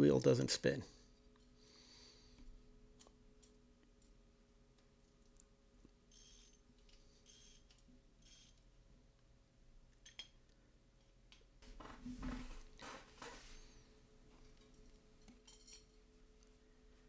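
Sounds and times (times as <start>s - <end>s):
clinking of steel parts: 10.0s - 10.4s, 14.5s - 16.0s.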